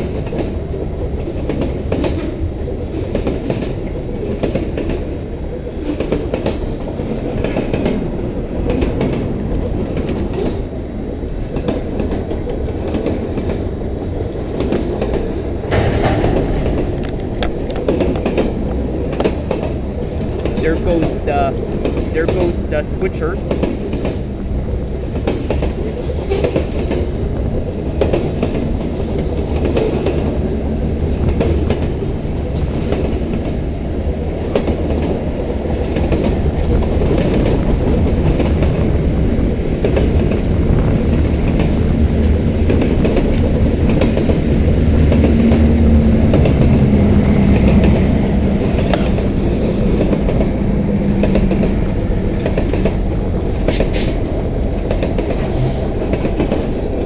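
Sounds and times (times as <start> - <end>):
freight train rolling by: 0.0 - 57.0
low steady tone: 0.0 - 57.0.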